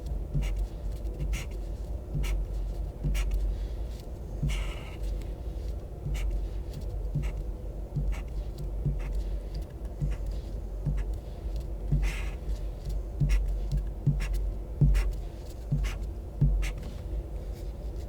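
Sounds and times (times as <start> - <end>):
felt tip marker on paper: 4.5 - 5.0, 8.0 - 9.3, 11.9 - 12.4, 13.2 - 16.9.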